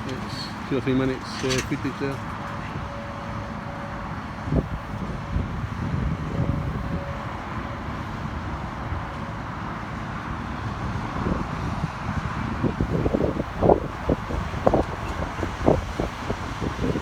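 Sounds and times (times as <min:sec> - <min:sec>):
tractor engine drone: 0:00.0 - 0:17.0
wind buffeting microphone: 0:04.1 - 0:17.0.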